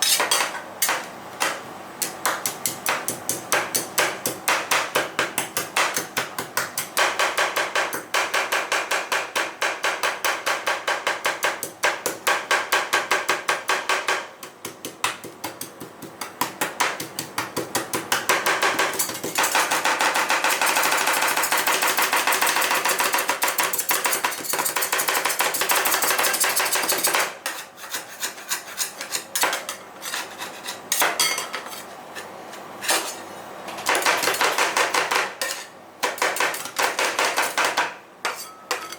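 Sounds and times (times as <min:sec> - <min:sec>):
spatulas scraping metal plate: 0:00.0 - 0:00.4, 0:26.3 - 0:33.3
metal spatulas clacking on steel: 0:18.7 - 0:30.3, 0:34.0 - 0:38.9.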